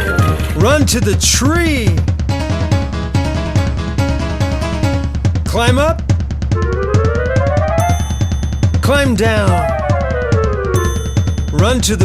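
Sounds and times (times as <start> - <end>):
music with fast drum beat: 0.0 - 12.0
rising tone sound effect: 6.6 - 8.8.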